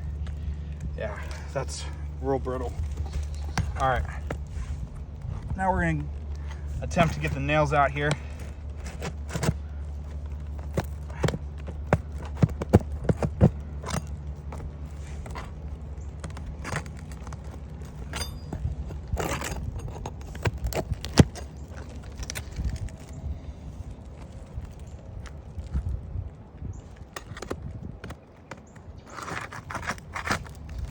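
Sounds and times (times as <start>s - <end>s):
steady low hum: 0.0s - 30.9s
shingle tool clicks and scrapes: 5.3s - 23.2s, 27.0s - 30.9s.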